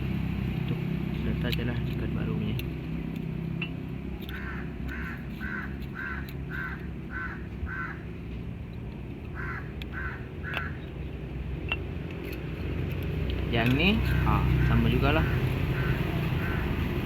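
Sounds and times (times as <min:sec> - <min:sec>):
crow cawing: 0:04.3 - 0:08.2, 0:09.3 - 0:10.9, 0:14.0 - 0:17.0.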